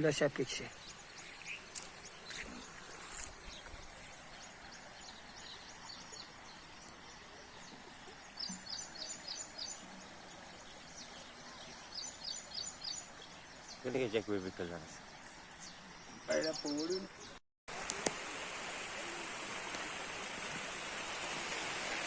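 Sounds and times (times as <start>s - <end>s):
steady outdoor hiss: 0.0s - 22.0s
small bird chirping: 14.5s - 17.4s.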